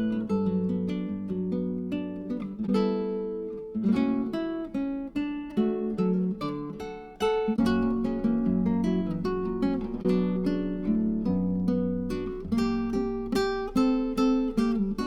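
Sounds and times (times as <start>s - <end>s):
acoustic guitar picking and strumming: 0.0s - 15.0s.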